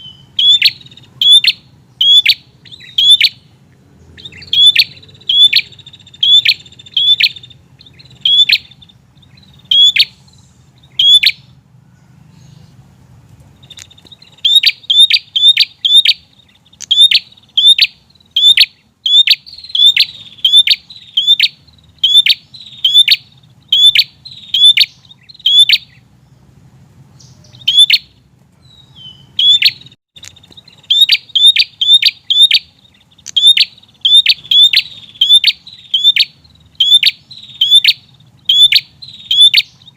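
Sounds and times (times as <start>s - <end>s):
bird high chip notes: 4.2s - 11.6s.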